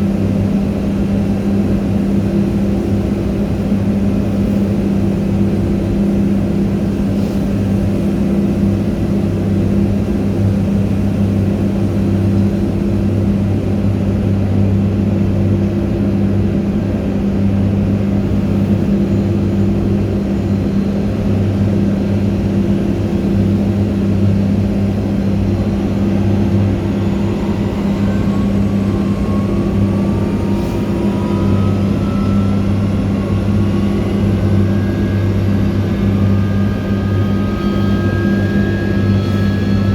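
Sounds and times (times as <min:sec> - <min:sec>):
low drone of machinery: 0:00.0 - 0:39.9
thin whine rising in pitch: 0:17.8 - 0:39.9.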